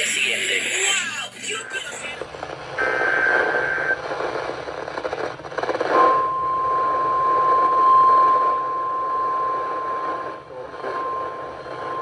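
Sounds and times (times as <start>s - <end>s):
radio hiss: 0.0s - 4.3s
steady alarm tone: 6.0s - 12.0s.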